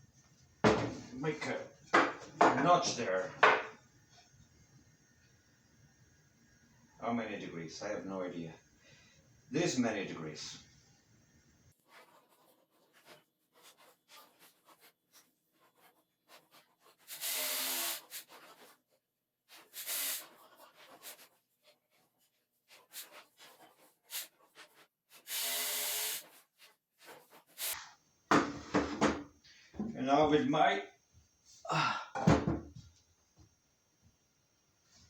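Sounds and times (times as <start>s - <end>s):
rasp strokes on wood: 15.6s - 18.8s.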